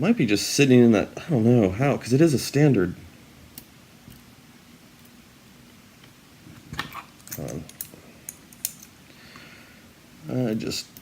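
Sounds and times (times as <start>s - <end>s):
metal lock parts clicking: 6.9s - 8.9s.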